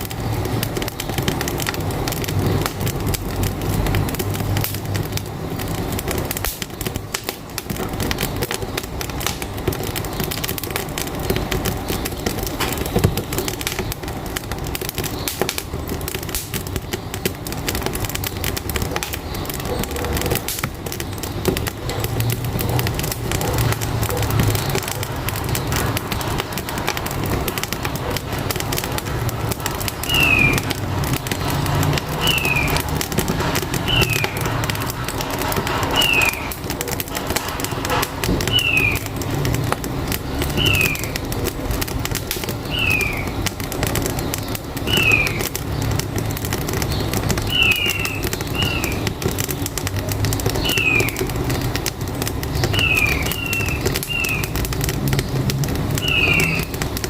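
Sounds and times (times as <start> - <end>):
stove fire crackling: 0.0 - 57.0
truck engine rumble: 0.0 - 57.0
bird chirping: 27.7 - 35.1, 35.9 - 36.5, 38.4 - 39.2, 40.2 - 41.5, 42.1 - 49.7, 50.3 - 51.8, 52.4 - 55.4, 56.0 - 57.0.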